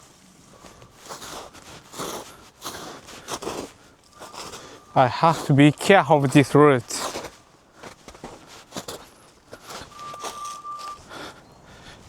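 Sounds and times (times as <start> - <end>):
footsteps in snow: 0.0 - 12.0
steady high tone: 4.1 - 6.8, 9.8 - 11.6.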